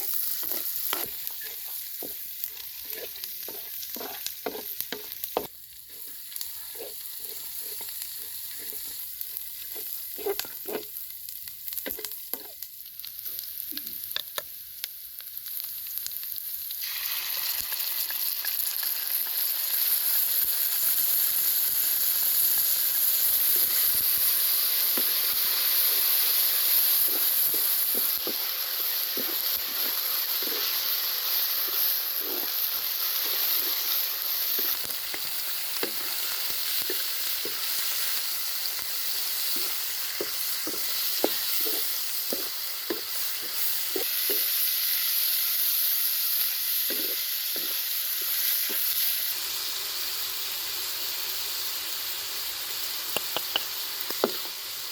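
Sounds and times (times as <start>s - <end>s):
utensil scraping a pan: 0.0s - 11.0s, 25.0s - 31.0s, 31.6s - 38.0s, 39.3s - 44.5s, 46.9s - 48.8s
meat sizzling in a pan: 0.0s - 54.9s.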